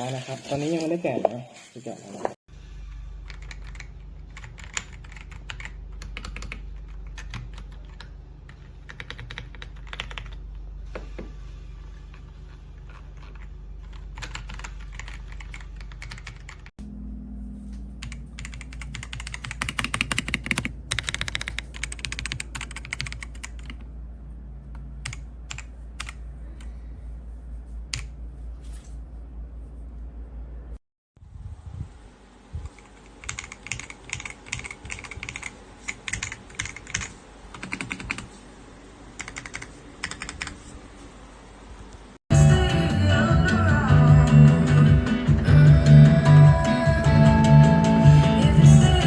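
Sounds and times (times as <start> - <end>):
steady low hum: 2.5 - 49.0
mechanical keyboard typing: 3.3 - 10.4, 12.8 - 16.7, 18.0 - 23.8, 25.0 - 26.2, 32.8 - 38.3, 39.2 - 40.6.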